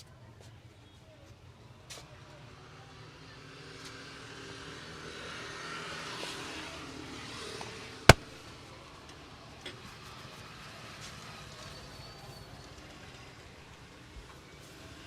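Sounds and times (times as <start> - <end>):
street traffic noise: 0.0 - 15.0
loud sharp crack: 8.1 - 8.3.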